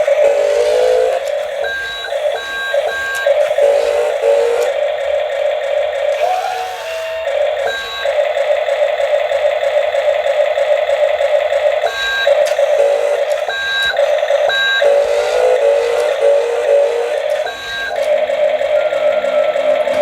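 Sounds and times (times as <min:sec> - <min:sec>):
electronic buzzing tone: 0:06.1 - 0:08.3.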